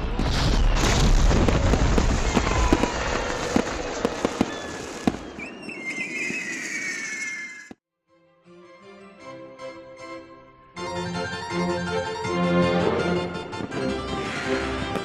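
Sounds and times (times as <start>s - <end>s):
fireworks crackling and banging: 0.0s - 7.8s
fireworks whistling: 0.2s - 7.8s.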